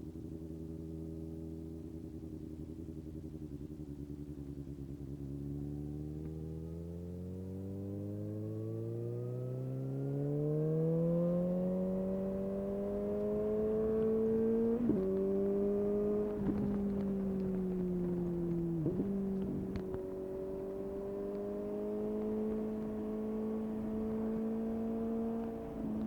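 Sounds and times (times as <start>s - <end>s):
motorcycle engine revving: 0.0s - 26.0s
motorcycle upshifts: 9.5s - 26.0s.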